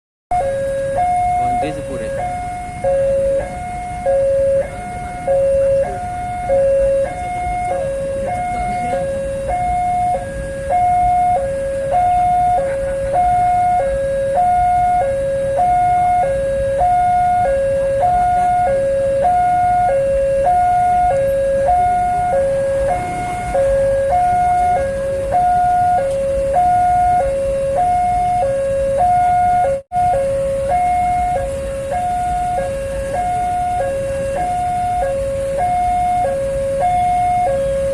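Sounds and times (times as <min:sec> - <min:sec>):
two-tone level crossing alarm: 0:00.3 - 0:37.9
low rumble: 0:21.8 - 0:25.8.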